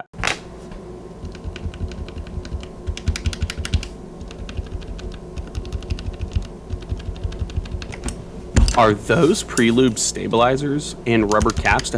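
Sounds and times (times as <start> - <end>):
mechanical keyboard typing: 1.3 - 8.0, 11.2 - 11.9.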